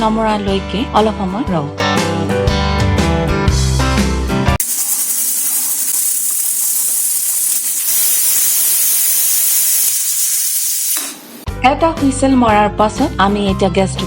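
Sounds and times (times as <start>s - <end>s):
pressure cooker steam hissing: 4.6s - 11.5s.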